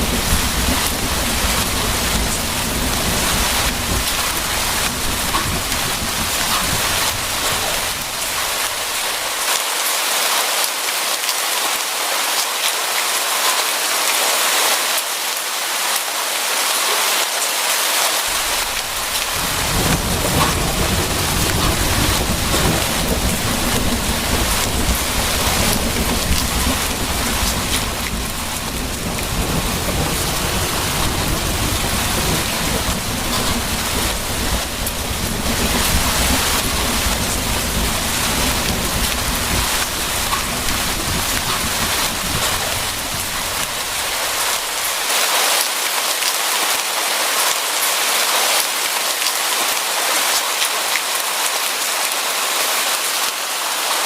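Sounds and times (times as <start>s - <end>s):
rolling thunder: 0.0s - 9.4s, 18.3s - 45.0s
rain pattering: 0.0s - 54.0s.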